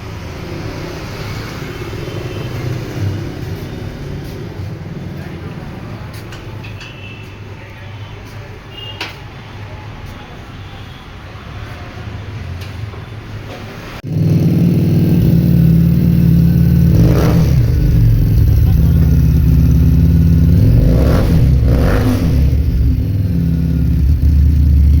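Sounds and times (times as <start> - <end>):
motorcycle engine running loud: 14.0 - 25.0.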